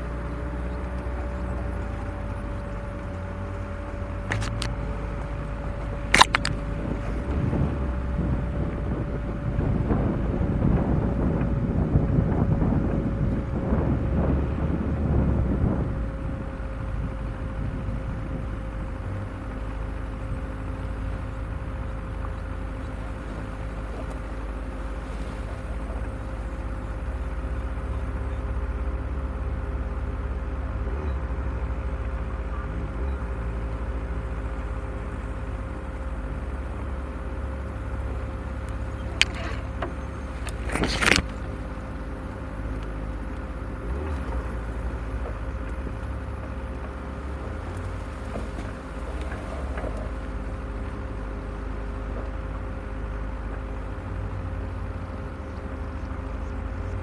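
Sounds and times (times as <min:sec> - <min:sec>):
brief knock or scrape: 0:04.3 - 0:04.7, 0:06.2 - 0:07.3, 0:39.2 - 0:39.8, 0:40.4 - 0:41.4
sharp click: 0:04.3 - 0:04.7, 0:06.2 - 0:07.2, 0:39.2 - 0:41.4.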